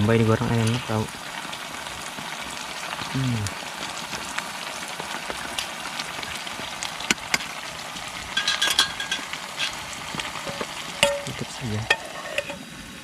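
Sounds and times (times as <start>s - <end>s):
food sizzling in a frying pan: 0.0s - 13.0s
utensil clattering against pan: 8.4s - 12.6s.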